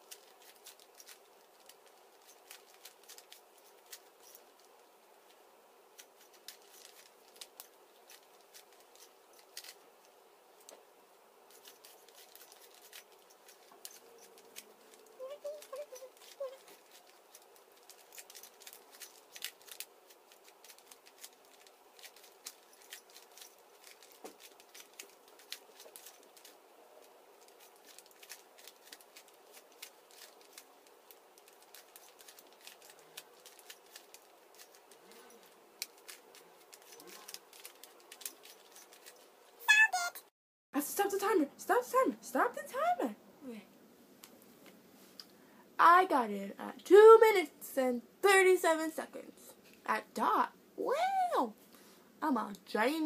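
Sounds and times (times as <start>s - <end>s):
plastic puzzle cube clicking: 6.0s - 9.8s, 11.5s - 26.6s, 27.4s - 35.1s, 35.8s - 39.2s.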